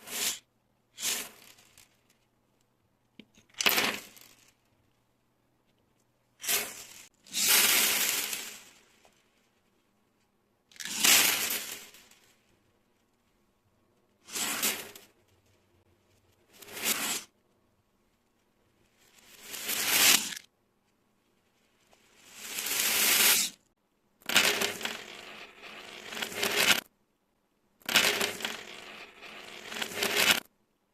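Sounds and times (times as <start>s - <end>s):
beads and stones crunching: 19.0s - 20.5s, 22.1s - 23.6s, 24.2s - 26.9s, 27.8s - 30.5s.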